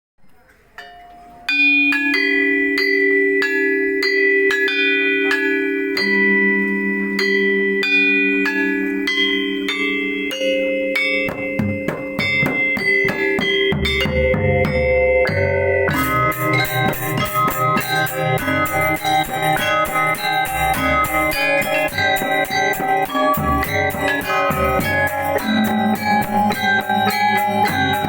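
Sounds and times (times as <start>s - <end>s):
metallophones ringing melody: 0.7s - 28.0s
drums: 11.0s - 28.0s.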